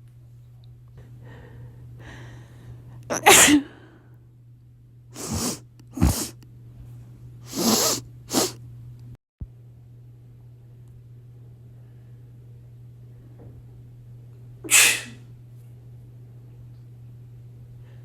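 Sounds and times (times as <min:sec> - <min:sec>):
person sneezing: 0:03.1 - 0:03.7, 0:05.2 - 0:06.4, 0:07.5 - 0:08.6, 0:14.7 - 0:15.2.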